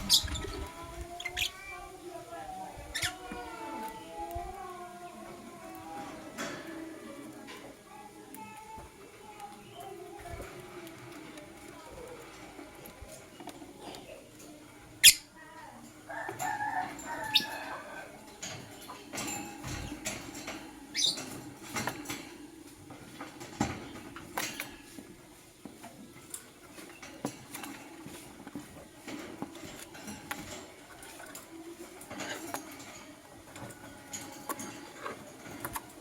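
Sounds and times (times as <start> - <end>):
bird chattering: 0.0 - 0.6, 15.0 - 15.4, 20.9 - 21.2
lovebirds chirping: 0.0 - 3.3, 20.9 - 21.3.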